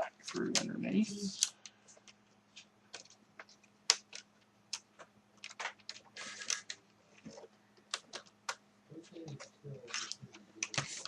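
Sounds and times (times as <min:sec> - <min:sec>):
hands tapping laptop plastic: 0:02.0 - 0:08.6.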